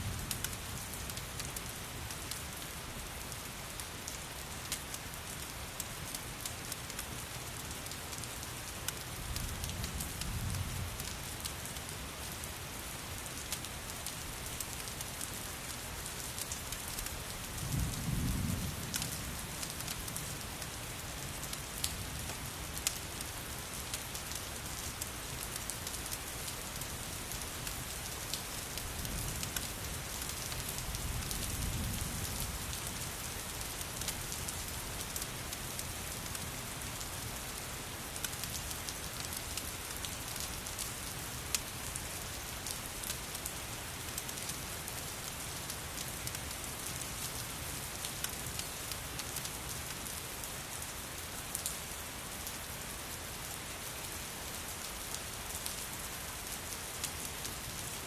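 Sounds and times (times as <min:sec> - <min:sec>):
steady rain: 0:00.0 - 0:58.0
wood fire crackling: 0:21.4 - 0:31.3, 0:32.2 - 0:37.0.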